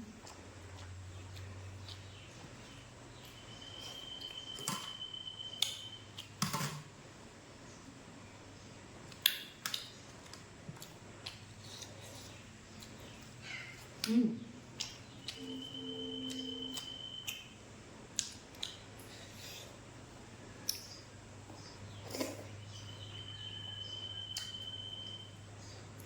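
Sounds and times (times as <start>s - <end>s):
thin high tone: 15.4s - 17.4s.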